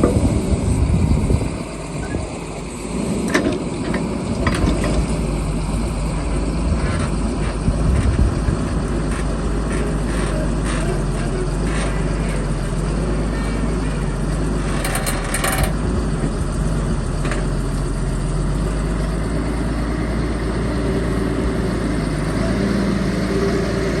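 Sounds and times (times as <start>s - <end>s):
excavator diesel engine running: 0.0s - 24.0s
metallic clatter: 14.6s - 15.8s.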